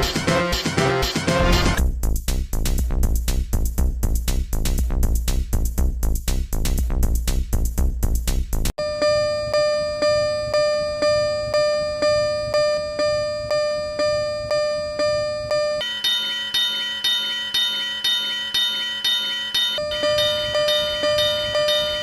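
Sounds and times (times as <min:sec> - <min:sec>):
electronic dance beat: 0:00.0 - 0:01.8
railway crossing alarm bell dinging: 0:08.8 - 0:22.0.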